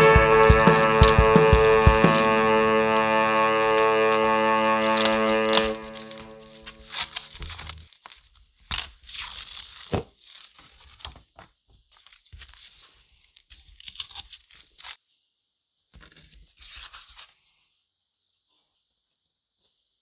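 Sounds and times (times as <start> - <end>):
tearing and crunching: 0.0 - 15.0.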